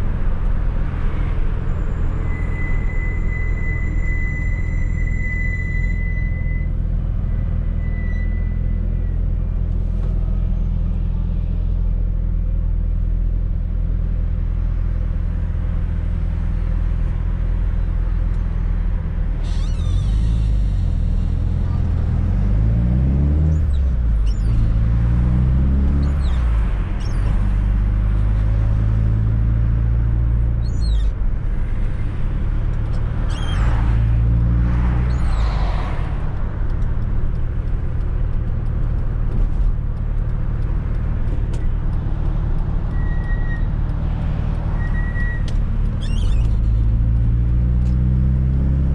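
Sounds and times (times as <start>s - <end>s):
car engine revving: 20.1s - 48.9s.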